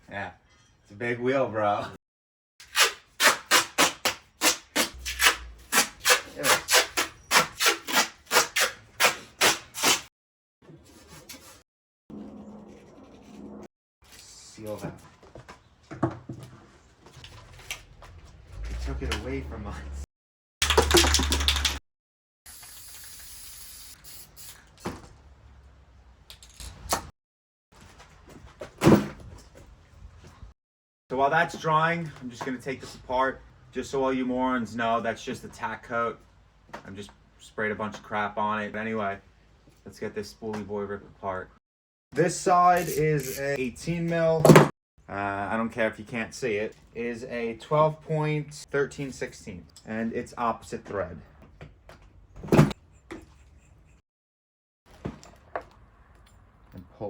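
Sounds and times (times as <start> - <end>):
spray paint can hissing: 22.5 - 24.7.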